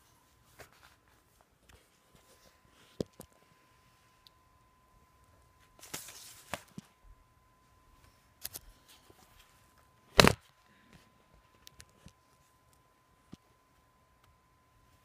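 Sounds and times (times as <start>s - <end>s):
loud plastic snap: 10.2s - 10.4s.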